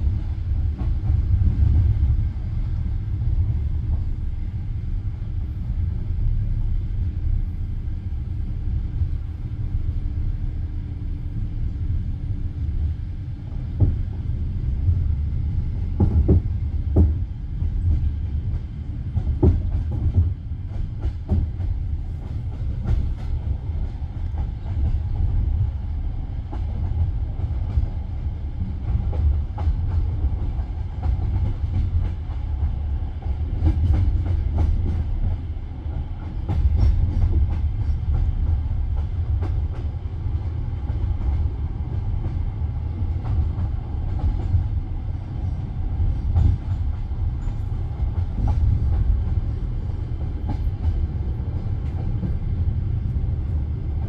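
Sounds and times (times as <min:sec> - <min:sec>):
train wheels rumbling on rails: 0:00.0 - 0:54.0.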